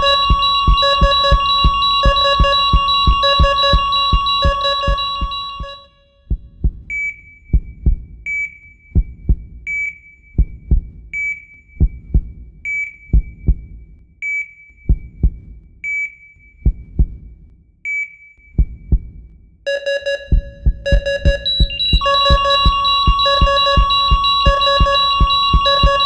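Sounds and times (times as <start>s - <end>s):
short electronic beeps: 0.0s - 5.9s, 19.7s - 26.0s
dull heartbeat thumps: 0.0s - 8.3s, 8.9s - 9.7s, 10.4s - 11.2s, 11.8s - 13.9s, 14.8s - 15.8s, 16.6s - 17.5s, 18.6s - 19.4s, 20.2s - 26.0s.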